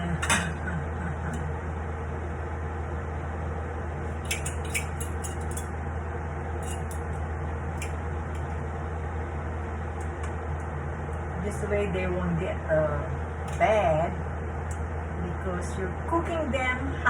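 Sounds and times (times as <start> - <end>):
utensils clicking on cookware: 4.2 - 5.7.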